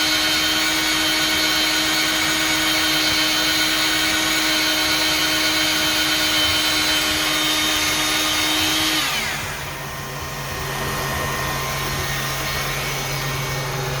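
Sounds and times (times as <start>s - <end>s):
power tool motor running: 0.0s - 14.0s
low machine hum: 9.3s - 14.0s.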